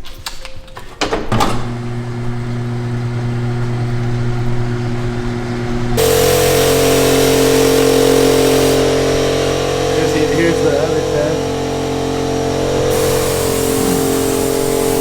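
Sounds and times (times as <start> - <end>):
motor humming: 1.6 - 15.0
machine running with hiss: 4.1 - 15.0
motor starting with a knock: 5.9 - 15.0.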